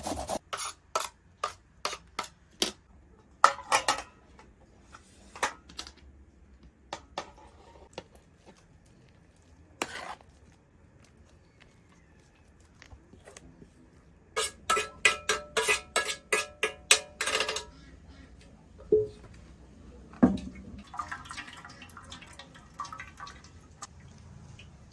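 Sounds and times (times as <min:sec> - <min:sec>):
metal utensil clinking on pot: 0:14.4 - 0:17.7.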